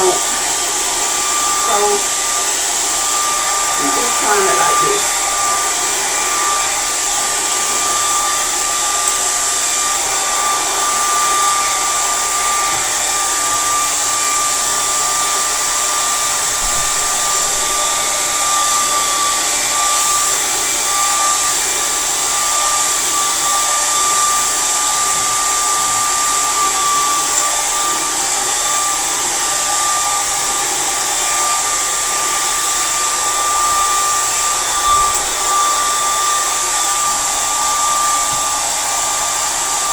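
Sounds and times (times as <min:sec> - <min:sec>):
blow dryer running: 0:00.0 - 0:39.9.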